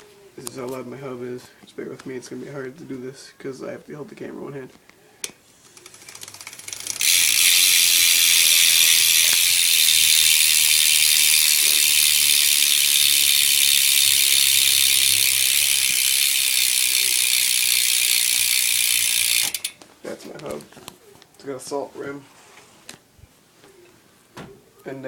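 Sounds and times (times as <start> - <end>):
bike hub ratcheting buzz: 5.8 - 19.8.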